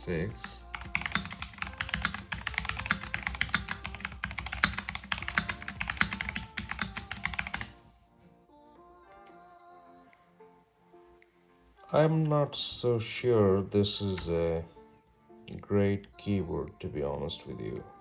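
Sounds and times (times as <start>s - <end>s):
soft background music: 0.0s - 18.0s
mechanical keyboard typing: 0.5s - 7.7s.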